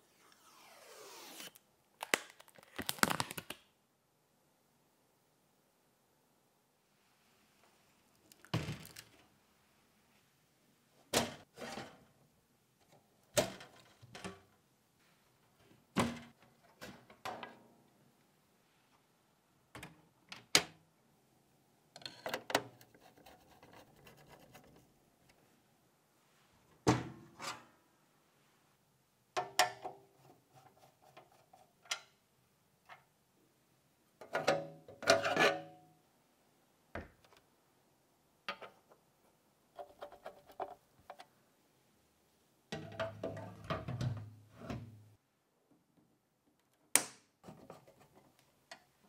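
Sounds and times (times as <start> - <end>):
rubbing or sliding: 0.0 - 1.6.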